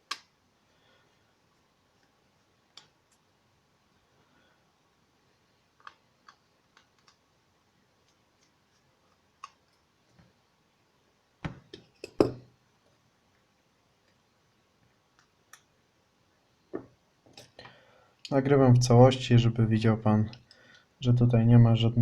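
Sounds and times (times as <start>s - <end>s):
small clicks and taps: 5.8s - 7.2s.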